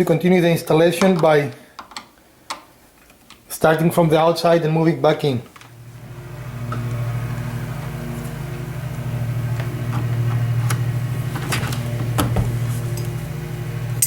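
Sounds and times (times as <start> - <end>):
electric motor hum: 4.9 - 14.0.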